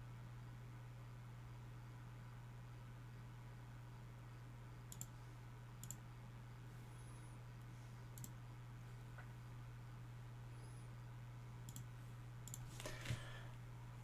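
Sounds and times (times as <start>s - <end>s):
steady low hum: 0.0s - 14.0s
faint sharp clicks: 8.2s - 8.4s, 11.7s - 12.6s.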